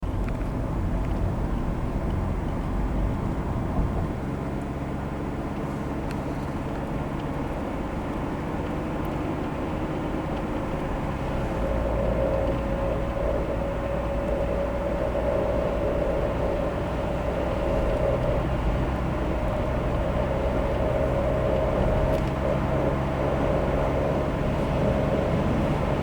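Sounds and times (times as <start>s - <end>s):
engine and road noise rumble: 0.0s - 26.0s
droning grinding tone: 10.6s - 26.0s.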